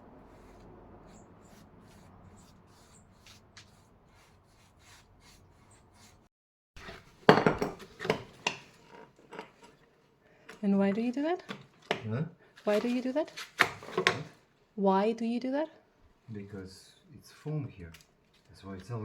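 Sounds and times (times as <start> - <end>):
hard objects clattering and scraping: 6.8 - 9.9.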